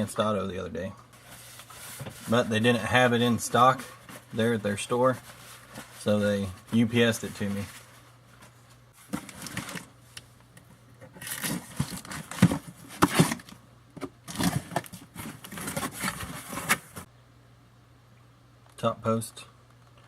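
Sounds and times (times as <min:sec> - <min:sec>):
box packing rustling and crinkling: 0:01.2 - 0:10.0, 0:11.1 - 0:17.1.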